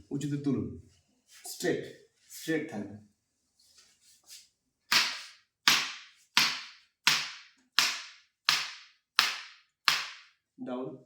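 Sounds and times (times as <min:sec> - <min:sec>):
sharp cracks: 0:04.9 - 0:10.3.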